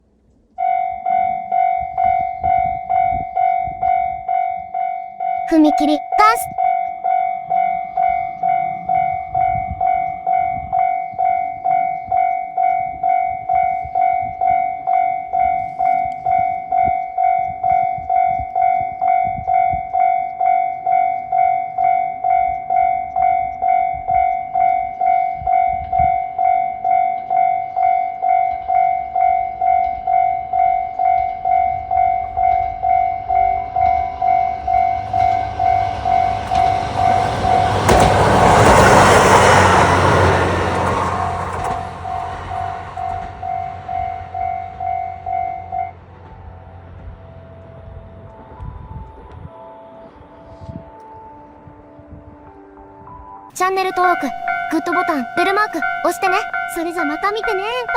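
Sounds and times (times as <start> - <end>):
level-crossing warning bell: 0.6 - 5.4, 6.5 - 48.2, 53.6 - 57.9
approaching train rumble: 27.4 - 50.9.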